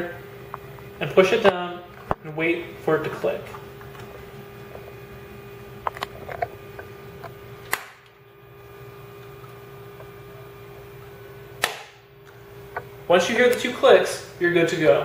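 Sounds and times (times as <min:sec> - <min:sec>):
steady low hum: 0:00.0 - 0:15.0
retaining clips snapping shut: 0:07.7 - 0:08.2, 0:11.6 - 0:12.0.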